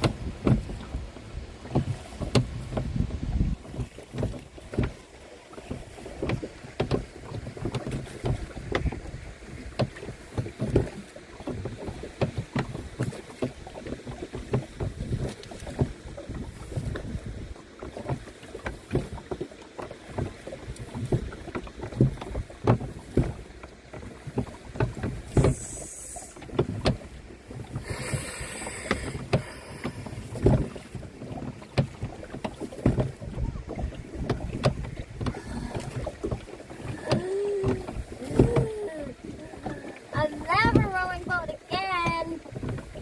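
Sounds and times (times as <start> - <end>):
paddle splashes and knocks: 0.0 - 43.0.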